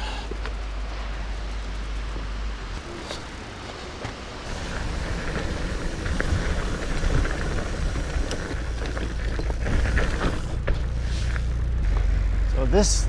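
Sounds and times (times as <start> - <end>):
bike clicks and rattles: 0.0 - 12.3
low rumble of bike tyres: 0.0 - 13.0
wind buffeting microphone: 4.4 - 10.2.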